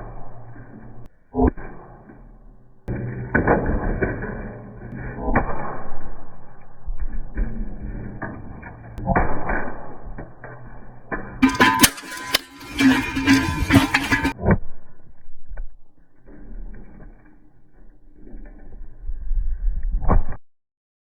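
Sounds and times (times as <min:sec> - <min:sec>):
knocks and clatters: 0:06.7 - 0:14.6.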